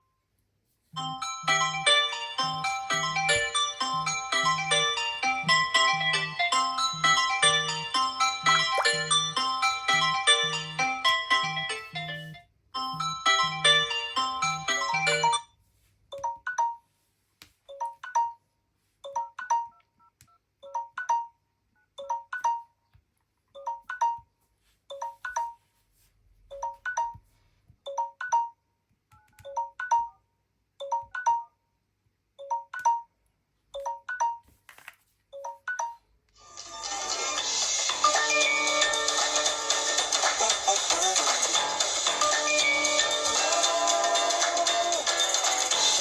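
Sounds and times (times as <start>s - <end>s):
melodic smartphone ringtone: 1.0s - 15.6s, 19.1s - 19.8s, 20.6s - 22.8s, 24.9s - 25.8s, 33.8s - 34.5s, 35.4s - 46.0s.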